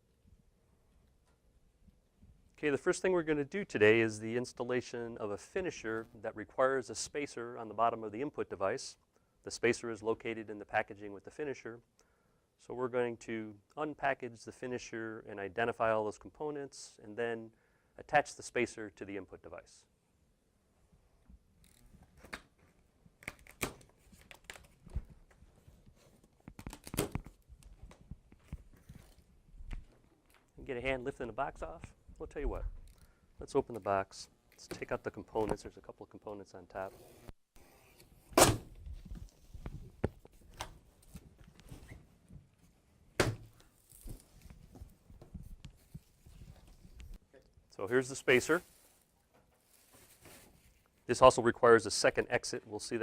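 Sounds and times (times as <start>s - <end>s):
packing material rustling: 23.2s - 29.3s, 43.5s - 45.2s, 48.3s - 51.1s
packaging tearing: 26.5s - 27.4s.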